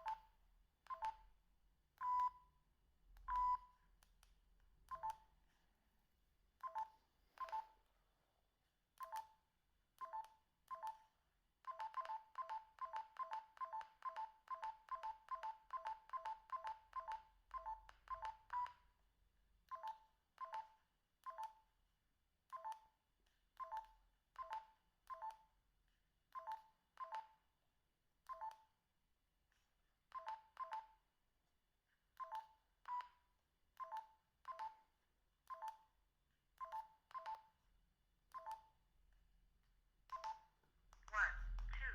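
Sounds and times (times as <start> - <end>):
mobile phone keypad beeps: 0.9 - 1.2, 2.0 - 2.5, 3.3 - 3.7, 4.9 - 5.3, 6.6 - 7.8, 10.0 - 11.1, 11.7 - 18.8, 19.7 - 21.6, 22.5 - 22.9, 26.4 - 27.4, 28.3 - 28.7, 30.2 - 31.0, 32.2 - 33.1, 33.8 - 34.8, 35.5 - 35.9, 36.6 - 37.5, 38.3 - 38.7, 40.1 - 40.5.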